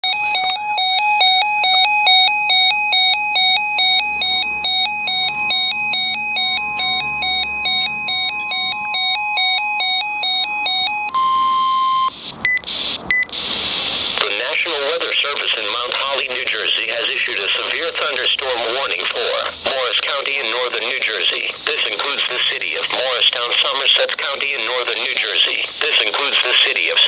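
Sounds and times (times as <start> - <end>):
electronic alarm warbling: 0.1 - 13.3
steady warning tone: 0.1 - 13.3
broadcast hiss: 12.1 - 27.0.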